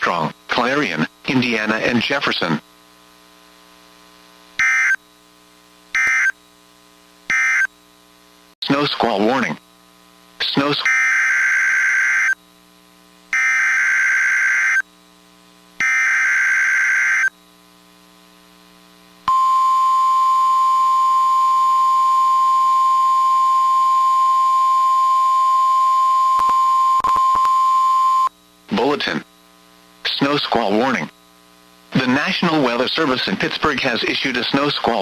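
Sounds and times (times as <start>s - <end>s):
steady warning alarm tone: 4.6s - 5.0s, 6.0s - 6.4s, 7.3s - 7.7s, 13.3s - 14.8s, 15.8s - 17.3s.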